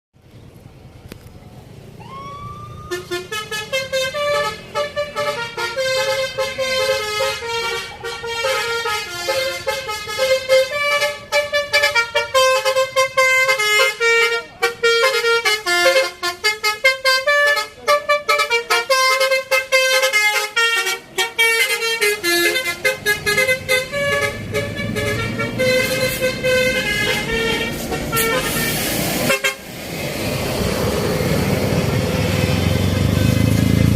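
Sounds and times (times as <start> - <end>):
musical bus horn melody: 2.8 - 29.7
broad hiss: 27.8 - 31.7.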